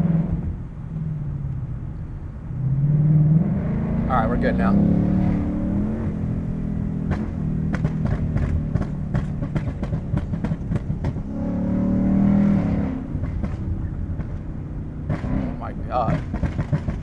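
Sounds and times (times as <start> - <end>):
car engine running: 4.1 - 17.0
exhaust pops and crackles: 7.0 - 11.3, 13.1 - 17.0.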